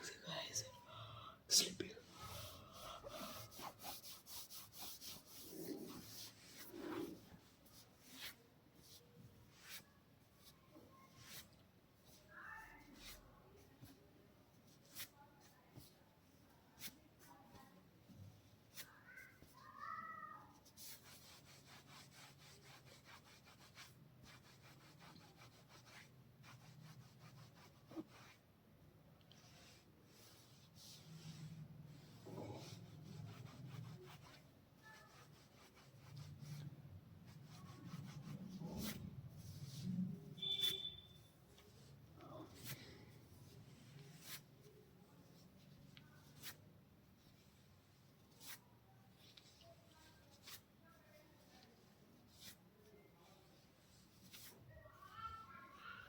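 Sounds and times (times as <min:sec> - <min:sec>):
hands rubbing hair and scalp: 0:02.1 - 0:09.8.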